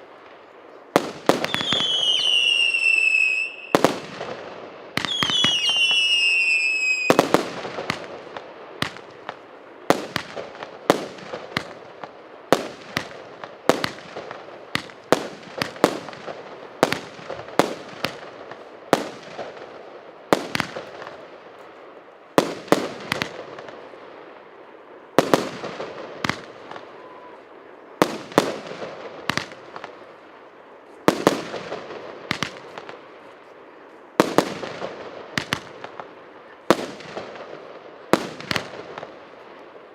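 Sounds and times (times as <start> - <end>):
firework bangs with echoing crackle: 0.2 - 39.9
falling firework whistle: 1.4 - 4.0, 5.0 - 7.3, 26.7 - 27.5.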